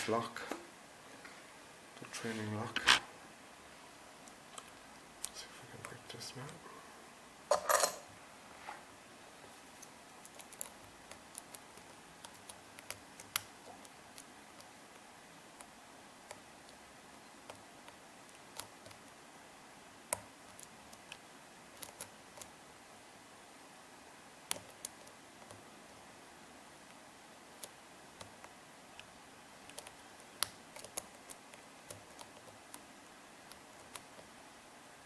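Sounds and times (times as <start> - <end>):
faint hiss: 0.0 - 35.0.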